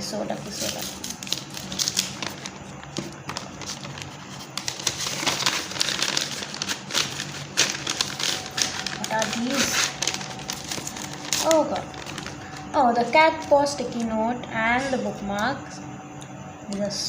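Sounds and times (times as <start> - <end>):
packaging crinkling: 0.4 - 12.7.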